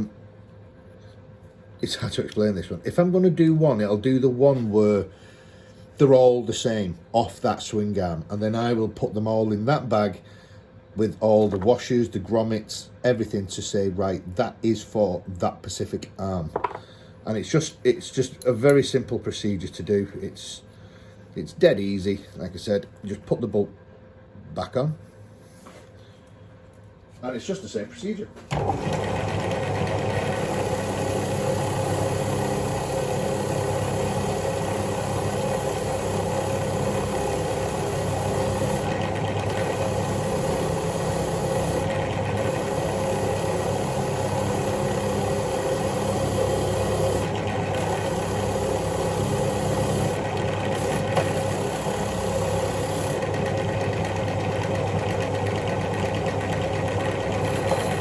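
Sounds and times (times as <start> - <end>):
electric wire wheel motor hum: 28.5 - 58.0.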